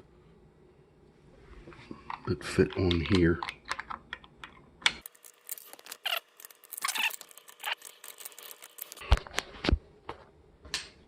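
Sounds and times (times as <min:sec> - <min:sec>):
plastic parts clicking and scraping: 0:02.1 - 0:09.5.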